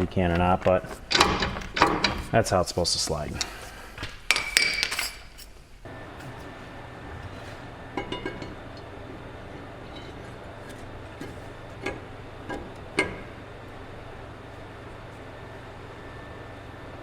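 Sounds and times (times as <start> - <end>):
heater humming: 0.0 - 17.0
metal tools clinking and knocking: 0.9 - 2.3, 4.3 - 5.5.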